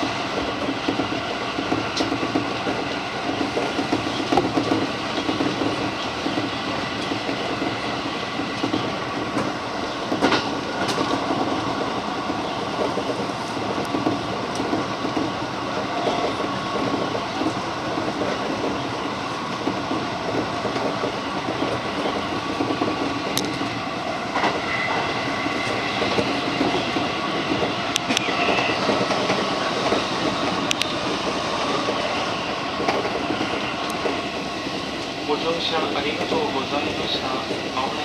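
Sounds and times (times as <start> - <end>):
train wheels rumbling on rail: 0.0 - 38.0
sharp clicks: 30.6 - 30.9.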